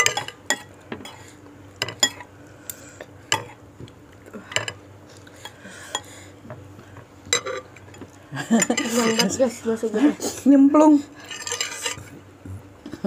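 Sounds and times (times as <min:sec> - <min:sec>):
cutlery clinking against bowl: 0:00.0 - 0:01.2, 0:01.8 - 0:02.3, 0:04.5 - 0:04.8, 0:07.3 - 0:09.4, 0:11.2 - 0:12.1.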